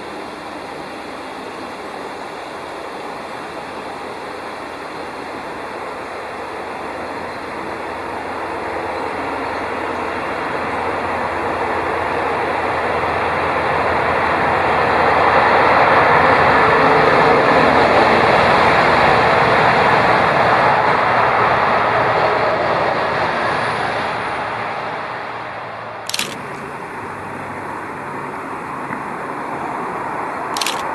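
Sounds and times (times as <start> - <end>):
road vehicle passing: 26.2 - 30.9.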